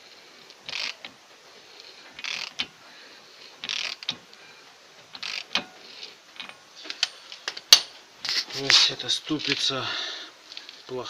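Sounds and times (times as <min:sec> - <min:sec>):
wheel hub whirring scrapes: 0:00.0 - 0:07.0.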